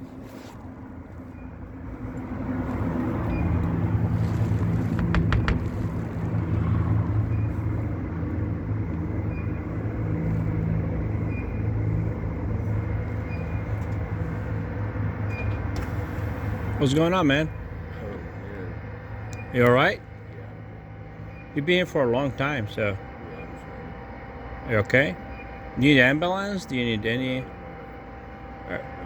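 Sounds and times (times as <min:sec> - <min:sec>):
car engine idling: 0:01.2 - 0:24.1.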